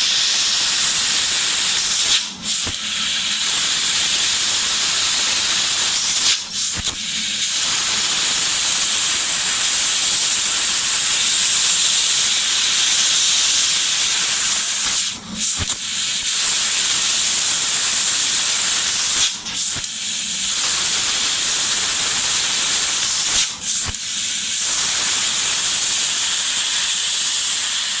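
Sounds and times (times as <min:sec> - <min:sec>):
laser cutter hissing: 0:00.0 - 0:28.0.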